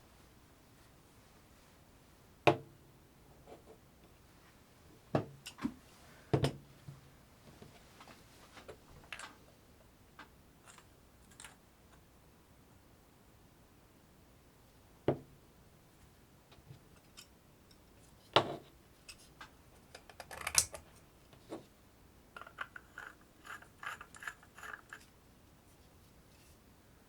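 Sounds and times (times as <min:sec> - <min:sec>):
small hard parts clicking: 0:19.9 - 0:20.8, 0:22.4 - 0:25.1.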